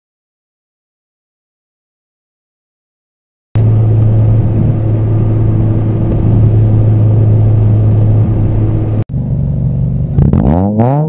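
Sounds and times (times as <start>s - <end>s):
car engine idling raspy: 3.6s - 11.0s.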